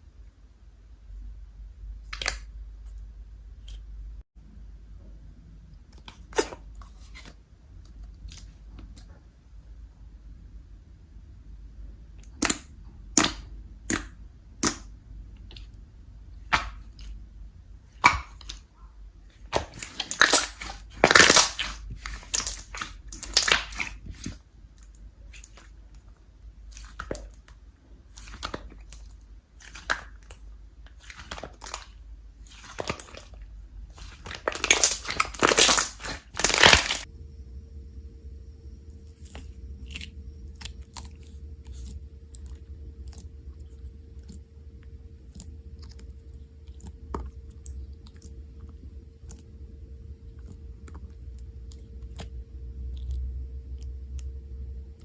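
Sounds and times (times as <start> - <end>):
slime crackling and squishing: 17.8 - 37.1, 38.9 - 54.2
slime popping: 19.4 - 24.4, 28.1 - 37.1.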